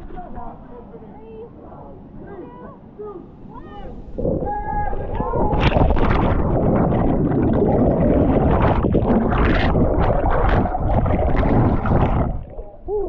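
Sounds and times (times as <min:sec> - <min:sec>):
underwater churning and gurgling: 0:03.9 - 0:13.0.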